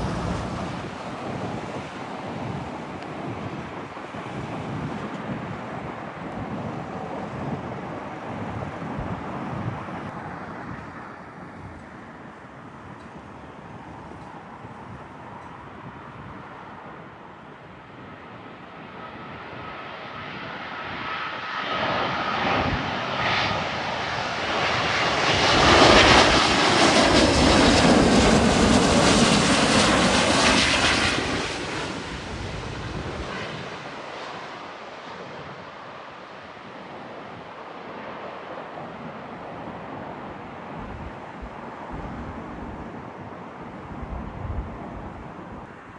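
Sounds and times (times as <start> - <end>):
jet airliner passing overhead: 0.0 - 45.9.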